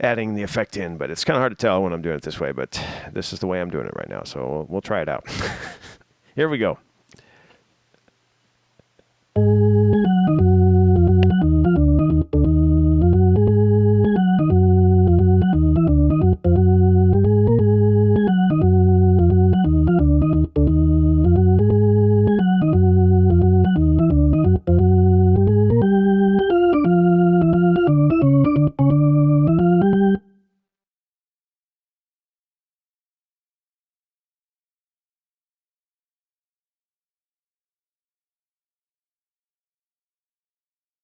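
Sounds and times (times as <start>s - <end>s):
jazz organ chord riff: 9.4s - 30.3s.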